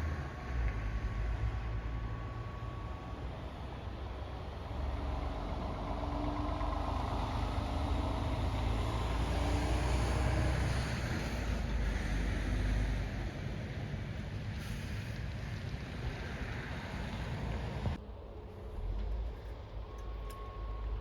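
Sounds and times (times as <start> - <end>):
distant wavering warning siren: 16.7 - 21.0.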